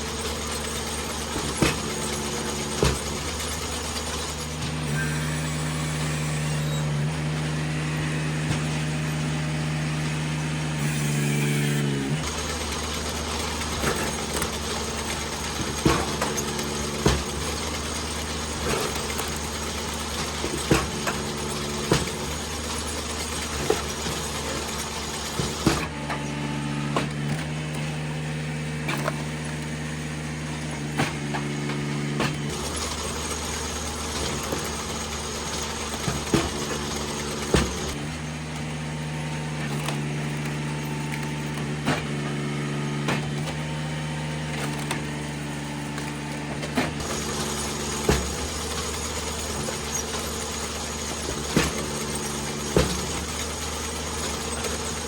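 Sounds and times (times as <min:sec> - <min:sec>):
hydraulic wood splitter running: 0:00.0 - 0:55.0.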